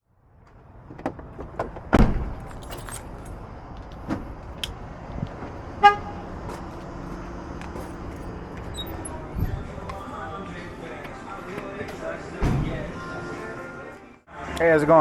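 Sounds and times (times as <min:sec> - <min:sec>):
heavy thump: 0:01.9 - 0:02.5, 0:12.4 - 0:12.9.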